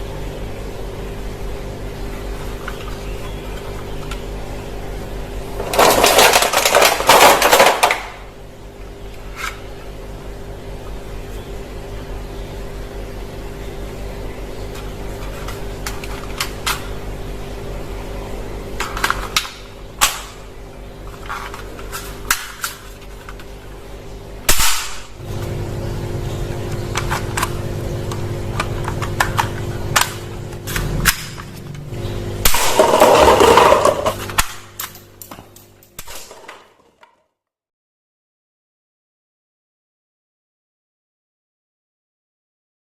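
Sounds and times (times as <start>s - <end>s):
steady low hum: 0.0s - 36.4s.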